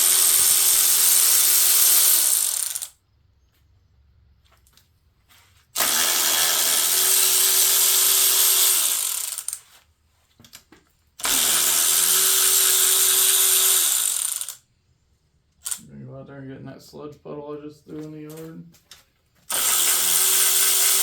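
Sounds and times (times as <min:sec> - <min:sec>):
power tool hissing and whining: 0:00.0 - 0:02.9, 0:05.8 - 0:09.6, 0:11.2 - 0:14.6, 0:19.5 - 0:21.0.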